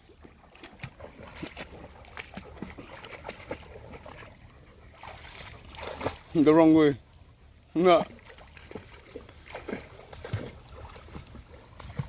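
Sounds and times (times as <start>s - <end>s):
dog paddling and splashing: 0.0s - 12.0s.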